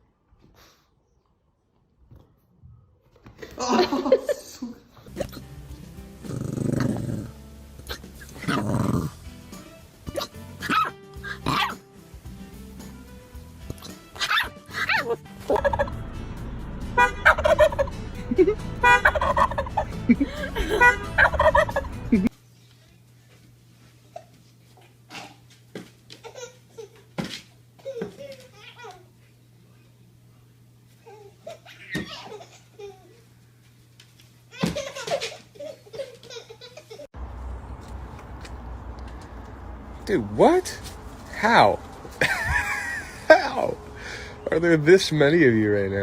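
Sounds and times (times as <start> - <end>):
people laughing: 3.4 - 4.9, 17.3 - 22.3, 42.2 - 44.3
turkey gobbling: 14.2 - 16.0, 17.0 - 22.2
short low turkey calls: 18.8 - 21.9.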